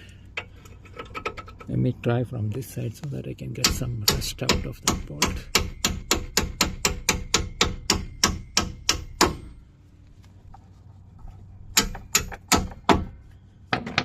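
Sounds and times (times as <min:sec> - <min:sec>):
hammer striking steel bolt: 0:03.6 - 0:09.5, 0:11.7 - 0:13.1.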